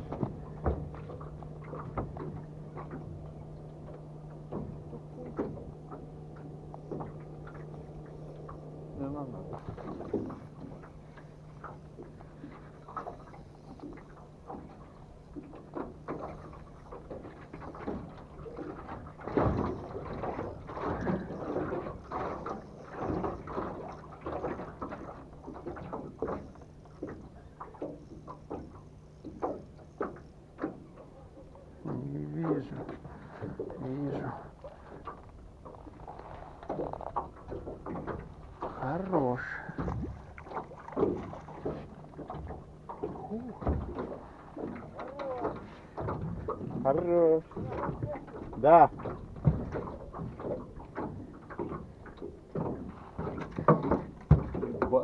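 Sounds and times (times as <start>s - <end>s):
gear knocking in boat: 0.0s - 55.0s
steady low hum: 0.0s - 55.0s
water sloshing against hull: 0.0s - 55.0s
knocks on boat hull: 52.5s - 55.0s.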